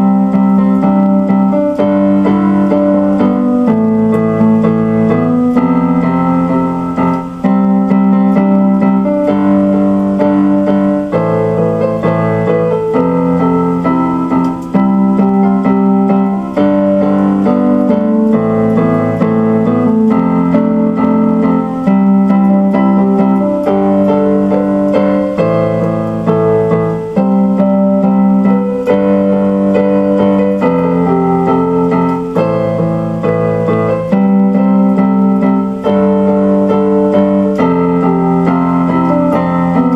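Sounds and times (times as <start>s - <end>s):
piano-like keyboard chords: 0.0s - 39.9s.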